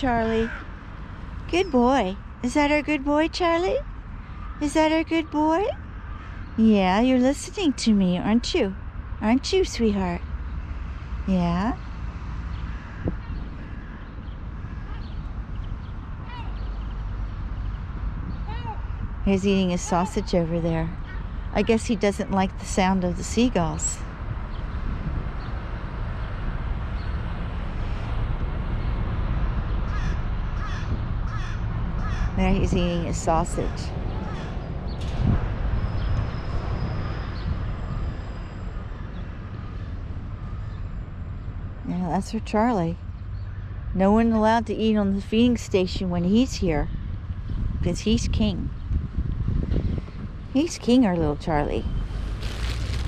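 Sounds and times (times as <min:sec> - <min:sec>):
steady low rumble: 0:00.0 - 0:53.0
faint bird calls: 0:04.2 - 0:06.6.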